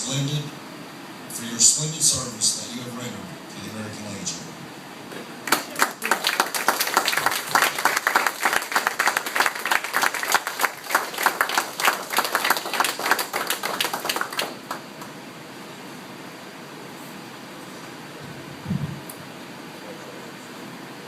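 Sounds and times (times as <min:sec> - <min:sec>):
audience applauding: 0:05.4 - 0:15.1.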